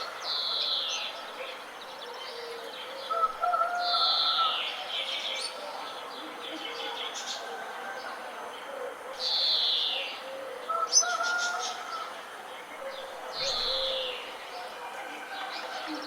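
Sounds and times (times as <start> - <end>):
birds chirping: 8.1 - 16.0.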